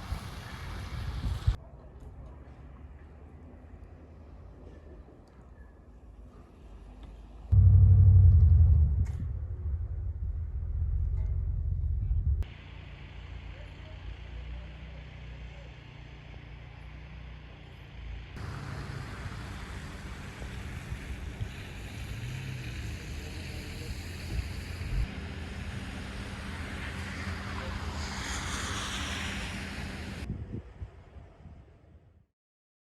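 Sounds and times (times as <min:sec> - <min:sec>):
wind: 0:00.0 - 0:32.3
vehicles passing: 0:06.6 - 0:30.3.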